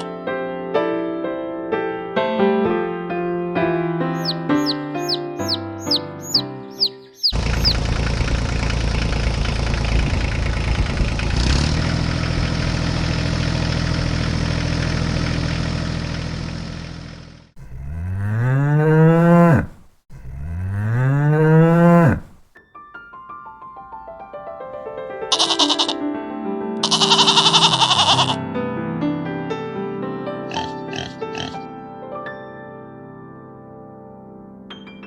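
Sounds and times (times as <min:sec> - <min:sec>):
cow mooing: 0:04.2 - 0:06.9, 0:17.6 - 0:22.5, 0:25.3 - 0:26.0, 0:26.8 - 0:28.4, 0:30.5 - 0:31.6
engine running: 0:07.3 - 0:18.1.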